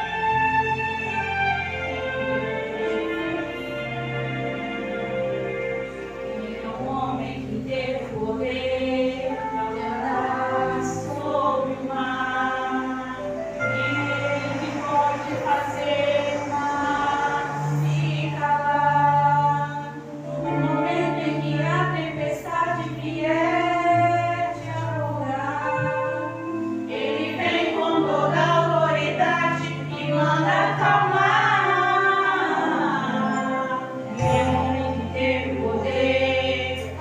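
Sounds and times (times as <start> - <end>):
low sustained accompaniment: 0.0 - 37.0
women singing gospel song: 6.3 - 37.0.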